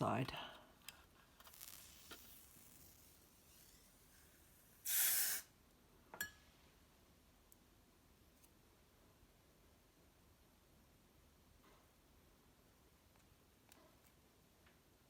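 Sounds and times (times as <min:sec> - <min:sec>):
short hiss: 0:01.5 - 0:05.5.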